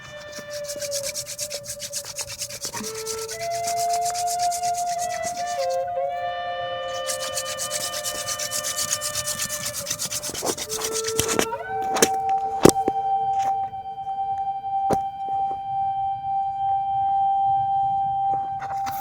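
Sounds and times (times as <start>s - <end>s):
hand drill spindle grinding on wood: 0.0s - 13.7s.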